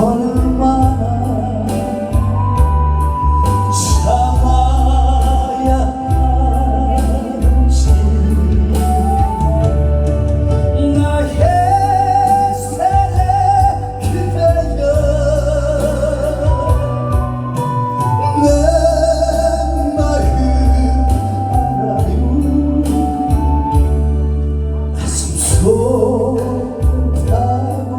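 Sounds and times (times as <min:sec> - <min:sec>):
backing track with deep bass: 0:00.0 - 0:27.9
song with wavering lead melody: 0:00.0 - 0:27.9.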